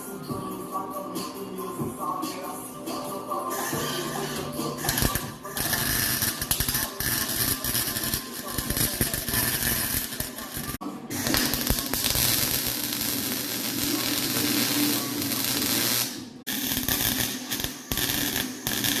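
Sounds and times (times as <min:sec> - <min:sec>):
welding arc crackling: 0:04.8 - 0:19.0.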